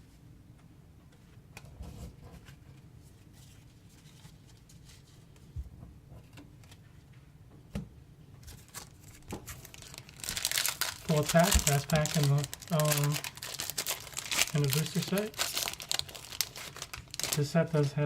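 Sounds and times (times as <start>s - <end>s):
cards and packaging rustling: 8.5s - 17.9s.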